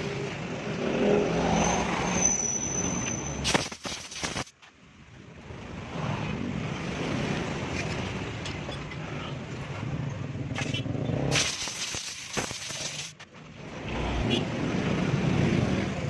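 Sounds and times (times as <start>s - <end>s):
sharp crack: 3.4s - 4.6s, 10.6s - 13.2s.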